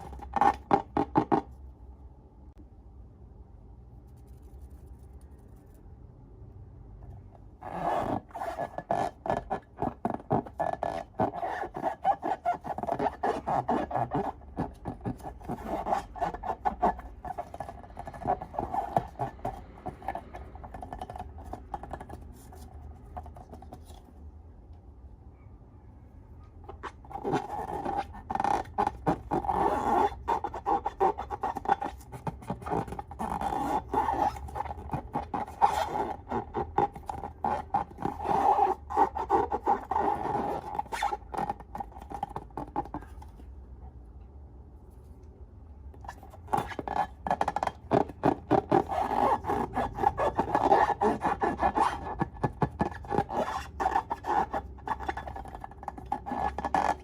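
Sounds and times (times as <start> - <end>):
scraping rub: 7.6 - 24.1, 26.7 - 43.5, 46.0 - 57.0.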